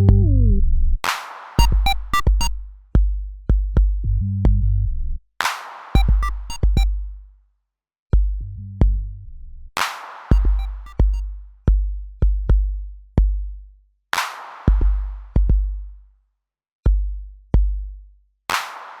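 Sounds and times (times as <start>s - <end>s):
deep kick drums: 1.6s - 4.7s, 6.0s - 7.0s, 8.2s - 9.2s, 10.3s - 13.6s, 14.7s - 15.9s, 16.9s - 18.0s
sharp clicks: 6.0s - 6.9s.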